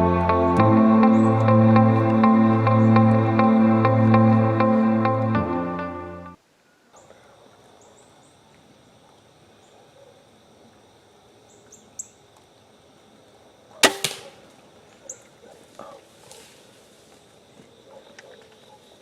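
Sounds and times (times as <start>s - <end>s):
insect drone: 7.0s - 19.0s
bow string snap: 13.8s - 14.4s.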